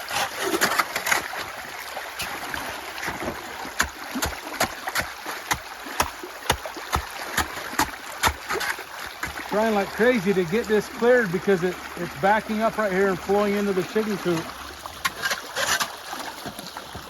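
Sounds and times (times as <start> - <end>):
shovel scraping and knocking ice: 0.0 - 1.4, 15.0 - 17.0
meltwater running through ditch: 0.0 - 17.0.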